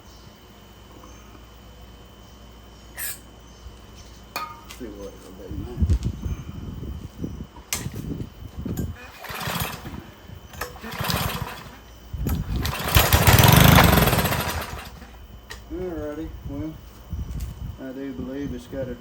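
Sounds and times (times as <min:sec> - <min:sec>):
small engine pull-started: 0:08.8 - 0:15.2.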